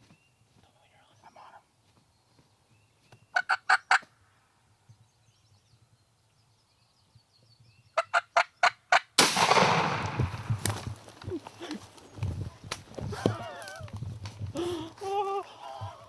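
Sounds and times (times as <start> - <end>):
turkey gobbling: 3.4 - 4.1
shotgun blast: 9.2 - 10.9.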